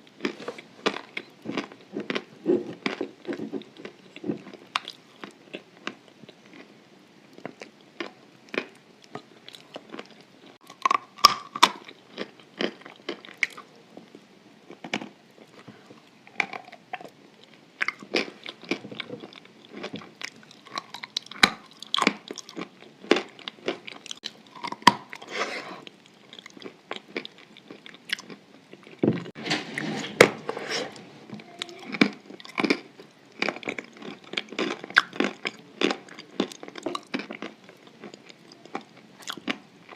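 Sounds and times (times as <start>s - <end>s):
wet chewing of paste: 0.0s - 6.7s, 14.7s - 29.4s, 31.9s - 39.9s.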